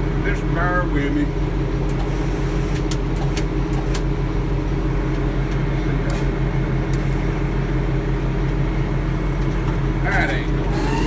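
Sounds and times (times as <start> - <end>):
sawmill engine running: 10.0 - 11.0.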